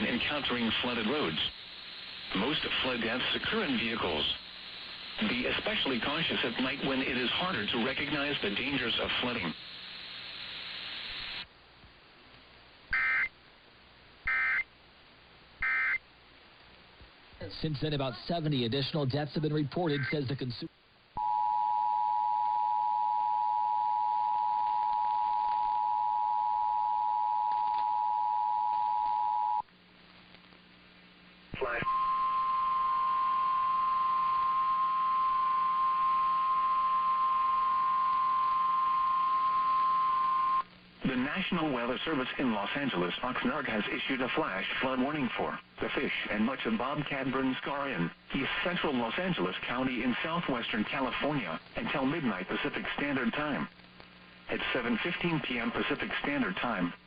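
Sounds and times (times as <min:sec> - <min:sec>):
buzzy data bursts: 0:00.0 - 0:11.5, 0:12.9 - 0:13.3, 0:14.3 - 0:14.7, 0:15.6 - 0:16.0
radio hiss: 0:00.0 - 0:11.6, 0:12.3 - 0:21.2, 0:29.3 - 0:57.0.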